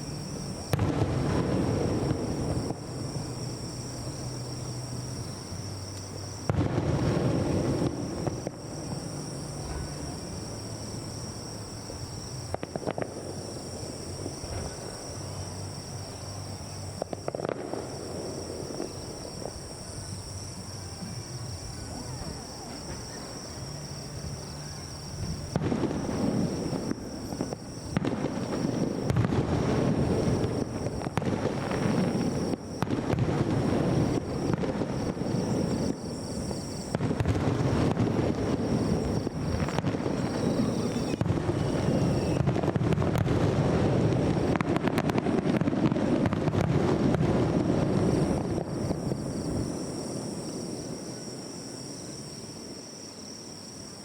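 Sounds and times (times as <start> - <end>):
fireworks bursting with deep booms: 0.0 - 54.0
high insect chirring: 37.8 - 42.5.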